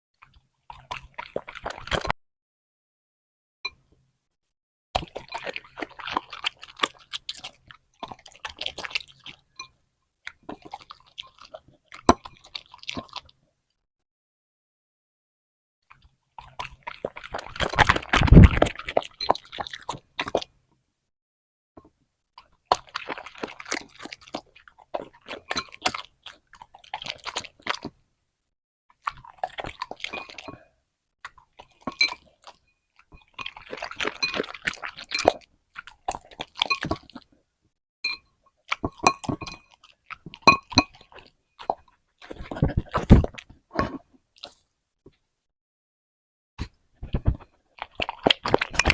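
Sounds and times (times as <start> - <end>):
puppy crunching a vegetable: 5.0 - 9.4, 16.4 - 20.5, 22.6 - 28.0, 28.9 - 30.7, 31.3 - 37.2, 38.6 - 44.6, 46.6 - 48.9.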